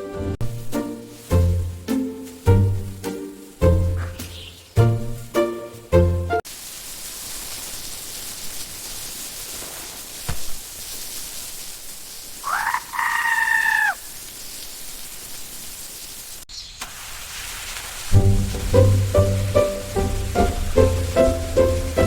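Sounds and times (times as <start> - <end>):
drawn-out animal call: 12.4 - 14.0.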